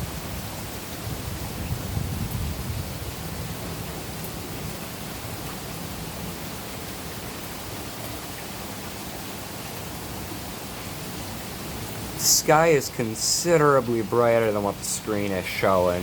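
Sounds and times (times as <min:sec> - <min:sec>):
rain hissing: 0:00.0 - 0:16.0.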